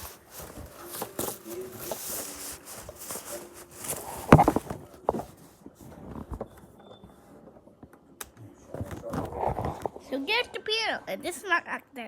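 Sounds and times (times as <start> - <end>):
faint rustle: 0.0 - 6.4.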